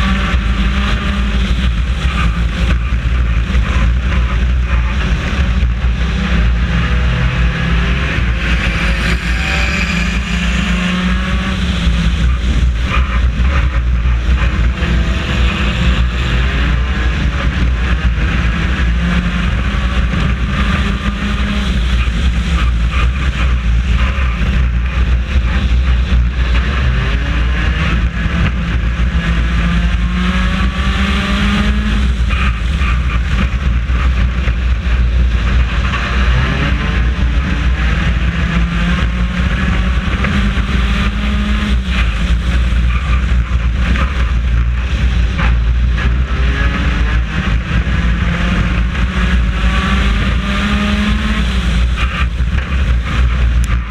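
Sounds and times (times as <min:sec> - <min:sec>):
race car engine revving: 0:00.0 - 0:53.9.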